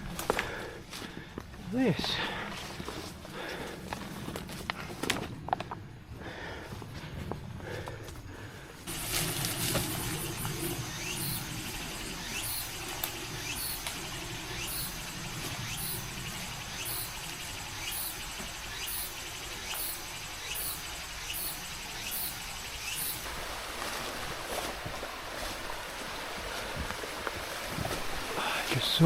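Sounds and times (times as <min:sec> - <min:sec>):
low rustling: 0:08.4 - 0:16.6
steady hiss: 0:08.9 - 0:29.0.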